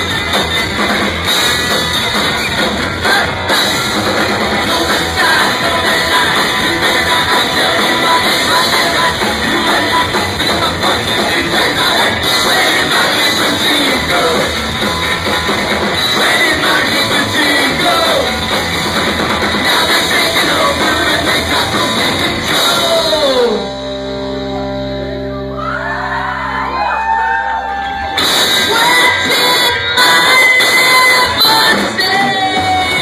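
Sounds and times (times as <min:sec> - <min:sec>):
ska-punk band playing live: 0:00.0 - 0:33.0
shouted and sung vocals: 0:03.0 - 0:03.8, 0:04.4 - 0:14.6, 0:16.0 - 0:18.5, 0:19.6 - 0:23.7, 0:25.6 - 0:33.0.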